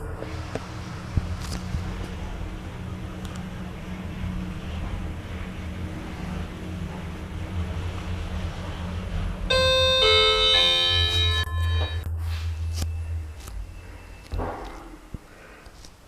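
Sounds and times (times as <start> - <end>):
lift humming: 0.0 - 15.6
electronic descending chime: 9.5 - 14.3.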